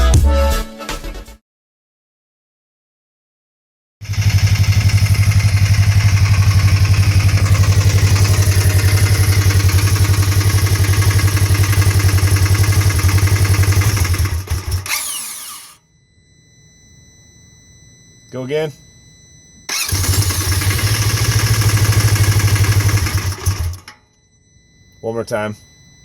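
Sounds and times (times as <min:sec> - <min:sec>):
engine idling and stalling: 0:04.0 - 0:15.8, 0:19.7 - 0:23.9.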